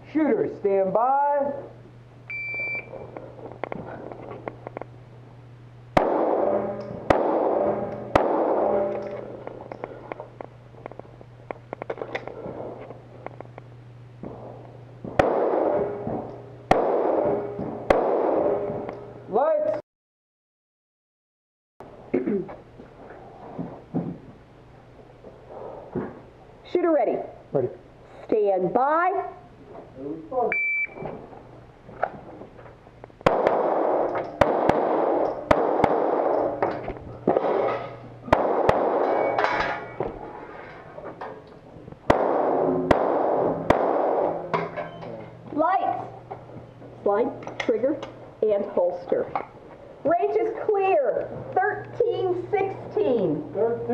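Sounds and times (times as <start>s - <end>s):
faint pistol shots: 6.0s - 8.9s, 15.2s - 15.8s, 16.7s - 18.5s, 33.2s - 36.6s, 38.3s - 39.2s, 42.1s - 44.4s
loud pistol shots with echo: 6.0s - 9.0s, 15.2s - 16.0s, 16.7s - 18.7s, 33.2s - 36.6s, 38.3s - 39.4s, 42.1s - 44.4s.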